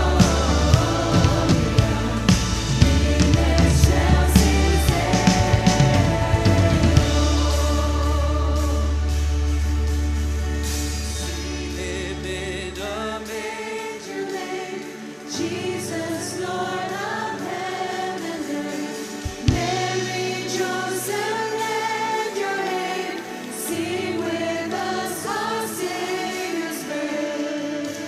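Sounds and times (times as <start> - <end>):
choir singing with accompaniment: 0.0 - 28.0.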